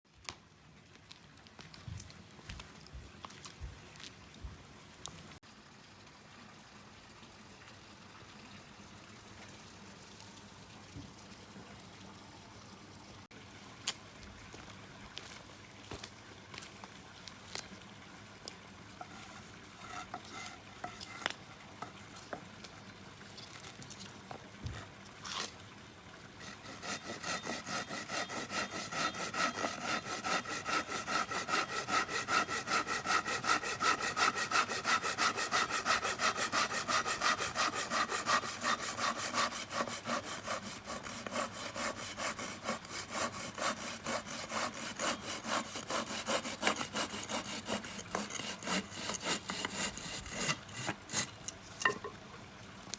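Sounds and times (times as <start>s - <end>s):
hand saw cutting wood: 19.0s - 22.4s, 26.4s - 51.6s.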